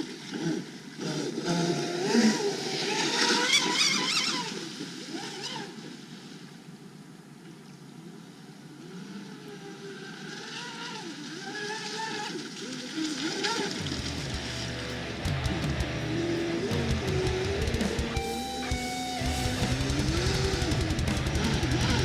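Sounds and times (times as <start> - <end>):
electric motor whining: 19.3 - 22.0.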